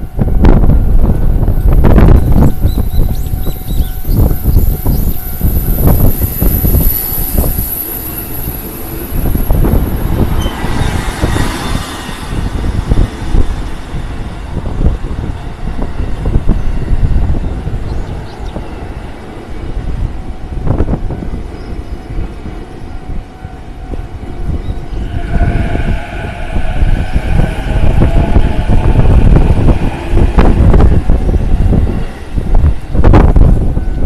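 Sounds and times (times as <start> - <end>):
electric train rumbling past: 0.0 - 34.0
high steady whine: 24.8 - 34.0.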